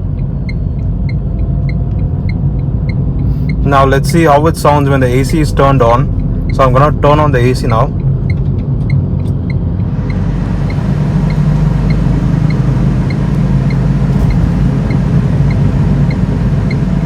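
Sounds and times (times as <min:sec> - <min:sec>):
car engine and road drone: 0:00.0 - 0:17.0
faint ticking: 0:08.8 - 0:17.0
air conditioning blower rushing: 0:09.7 - 0:17.0.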